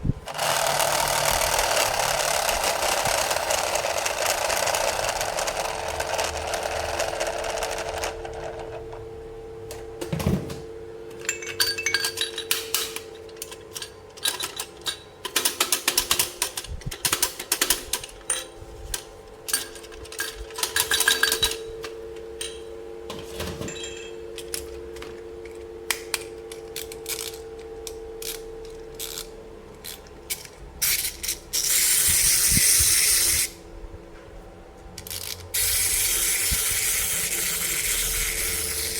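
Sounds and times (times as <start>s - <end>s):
faint steady hum: 0.0s - 38.9s
plastic toy parts clicking: 0.3s - 8.5s.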